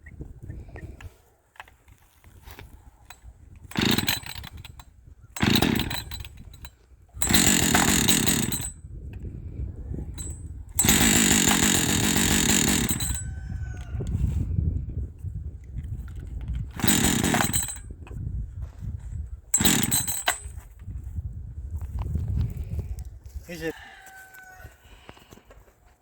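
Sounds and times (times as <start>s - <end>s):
chainsaw pull-starting: 3.1s - 8.8s, 10.2s - 13.9s, 16.0s - 18.0s, 19.6s - 20.7s
chainsaw running in short bursts: 3.7s - 4.8s, 5.4s - 8.8s, 10.2s - 13.4s, 16.6s - 17.9s, 19.6s - 20.6s.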